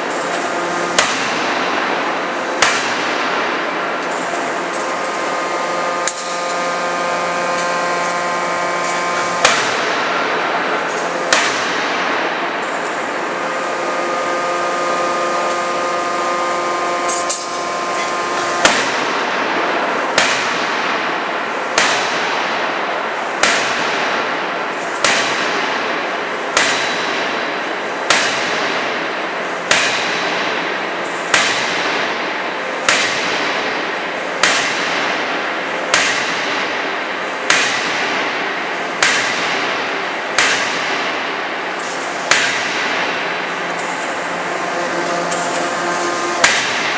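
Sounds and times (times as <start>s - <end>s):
machinery noise: 0.0s - 23.4s, 39.8s - 46.9s
multi-tone hum: 0.0s - 46.9s
forging hammer banging: 0.3s - 1.8s, 2.6s - 3.4s, 4.1s - 19.4s, 20.1s - 21.1s, 21.7s - 22.6s, 23.4s - 24.2s, 25.0s - 25.9s, 26.6s - 27.3s, 28.1s - 28.8s, 29.7s - 30.5s, 31.3s - 32.0s, 32.8s - 33.6s, 34.4s - 35.1s, 35.9s - 36.8s, 37.5s - 38.3s, 39.0s - 46.9s.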